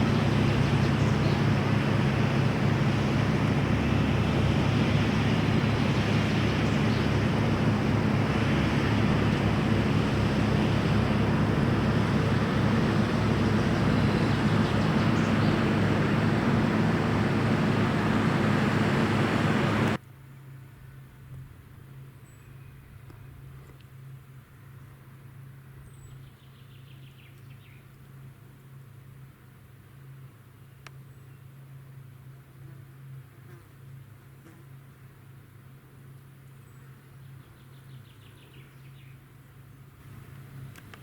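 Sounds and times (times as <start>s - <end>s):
diesel engine droning: 0.0s - 20.0s, 34.8s - 41.0s.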